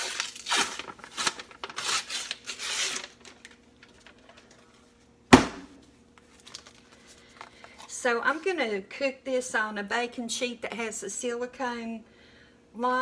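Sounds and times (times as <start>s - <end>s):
paper wrapper tearing: 0.0s - 4.6s.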